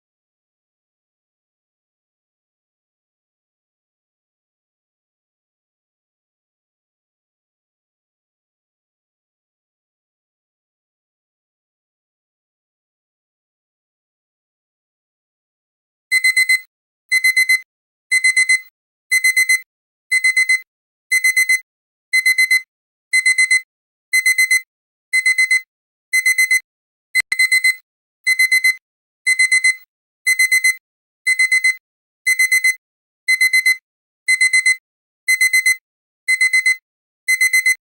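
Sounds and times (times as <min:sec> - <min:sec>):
alarm clock beeping: 0:16.1 - 0:21.6, 0:22.2 - 0:23.6, 0:24.2 - 0:24.6, 0:25.2 - 0:26.6, 0:27.2 - 0:37.8.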